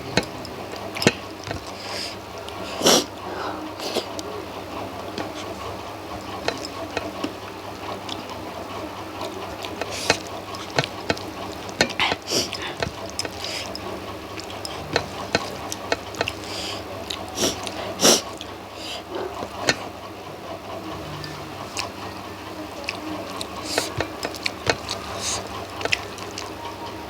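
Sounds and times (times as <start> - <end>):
faint steady hum: 0.0 - 27.0
wet chewing and lip smacks: 9.2 - 19.9, 22.7 - 26.6.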